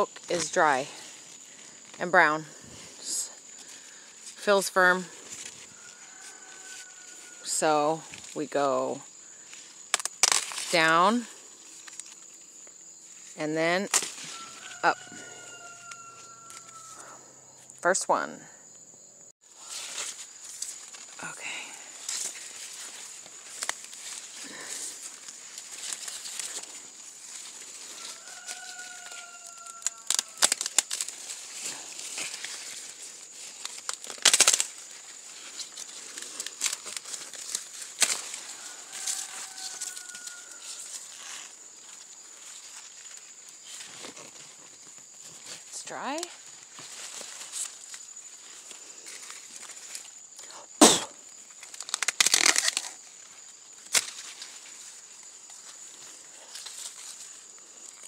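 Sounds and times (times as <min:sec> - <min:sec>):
dry corn stalks rustling: 0:00.0 - 0:17.1, 0:19.5 - 0:50.4, 0:51.2 - 0:58.0
sharp cracks and snaps: 0:09.9 - 0:10.8, 0:22.1 - 0:24.4, 0:25.0 - 0:41.4, 0:51.5 - 0:53.0, 0:53.8 - 0:54.6.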